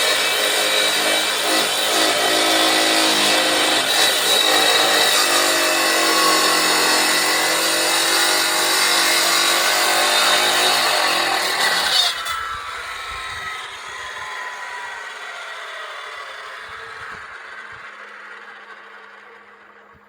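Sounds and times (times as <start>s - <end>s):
motor running at high speed: 12.1s - 20.0s.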